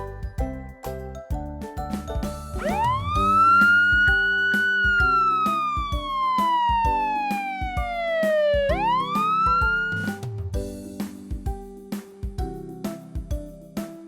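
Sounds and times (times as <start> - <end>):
upbeat children's music: 0.0 - 14.0
wailing siren: 2.6 - 10.1.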